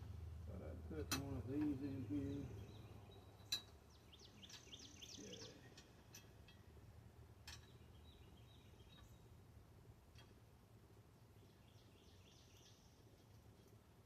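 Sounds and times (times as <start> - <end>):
bird chirping faintly: 1.6 - 6.9, 7.5 - 9.5.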